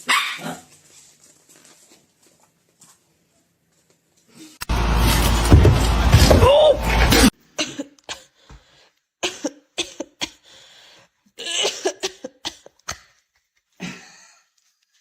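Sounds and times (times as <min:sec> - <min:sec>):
person coughing: 0:07.1 - 0:08.3, 0:11.4 - 0:12.8.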